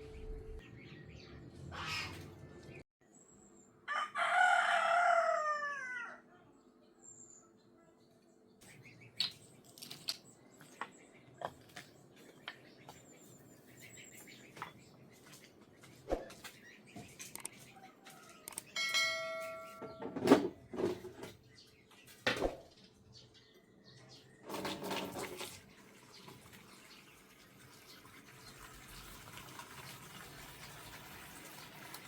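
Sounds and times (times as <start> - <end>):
vessels knocking and clattering: 19.0 - 21.4
running water: 24.5 - 32.0.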